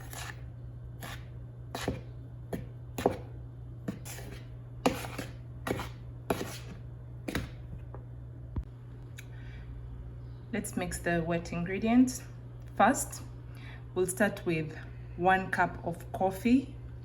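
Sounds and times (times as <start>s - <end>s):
utensil scraping mixing bowl: 0.0s - 0.4s, 1.0s - 2.1s, 3.9s - 7.4s
steady low hum: 0.0s - 17.0s.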